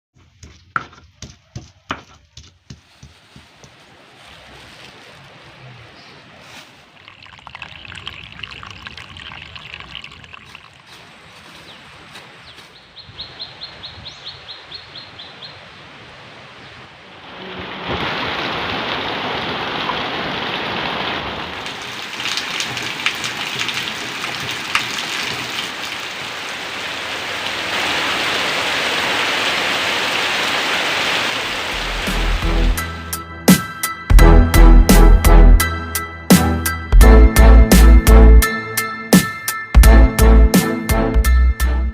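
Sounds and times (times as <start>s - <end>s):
heavy rain hissing: 3.7s - 12.4s, 15.5s - 33.0s
birds chirping: 5.0s - 17.2s
water trickling: 6.3s - 12.0s, 21.6s - 28.4s.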